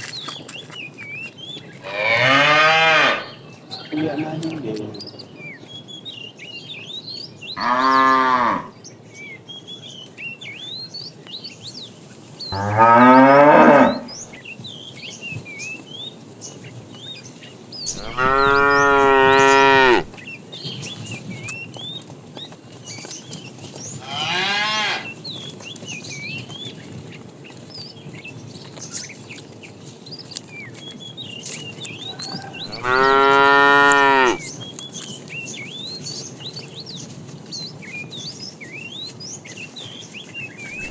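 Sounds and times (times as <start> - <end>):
small birds chirping: 0.0 - 2.4, 3.0 - 24.4, 25.0 - 40.9
cattle mooing: 1.9 - 3.4, 7.6 - 8.7, 12.6 - 14.2, 17.9 - 20.1, 24.0 - 25.1, 32.2 - 34.4.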